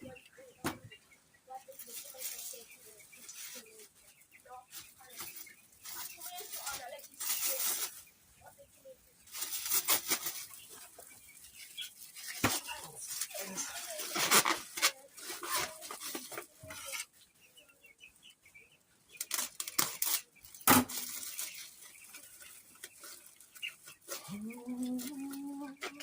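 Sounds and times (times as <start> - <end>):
pans and bags clattering: 13.4 - 17.1
person humming: 24.2 - 26.0.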